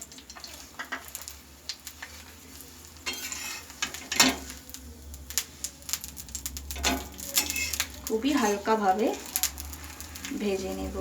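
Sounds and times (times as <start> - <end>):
crepe sizzling on griddle: 0.0 - 11.0
metal spatula scraping and tapping: 0.1 - 1.3, 3.0 - 4.6, 6.7 - 10.3.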